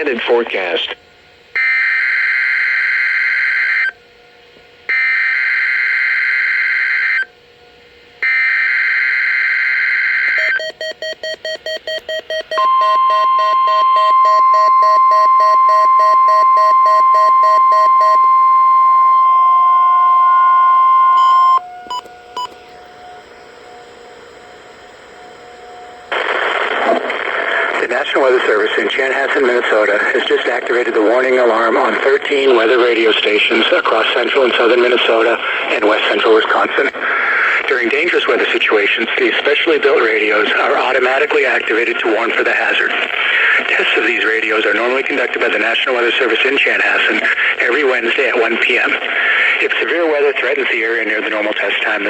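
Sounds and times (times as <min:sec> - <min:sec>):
steady warning alarm tone: 0:01.6 - 0:04.2, 0:04.9 - 0:26.6
fast beeping: 0:10.4 - 0:22.7.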